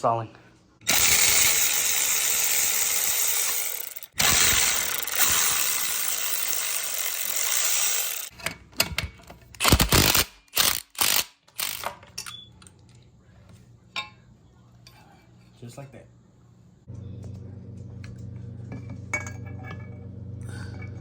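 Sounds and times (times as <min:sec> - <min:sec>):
power tool running: 0:00.8 - 0:08.3, 0:09.6 - 0:11.8.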